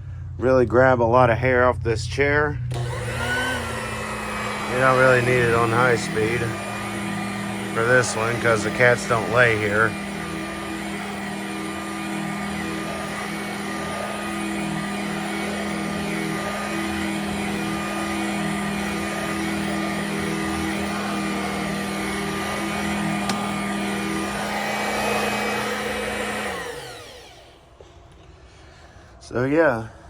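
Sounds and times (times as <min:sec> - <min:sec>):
vacuum motor winding down: 0:02.7 - 0:27.7
handheld vacuum running: 0:02.7 - 0:27.8.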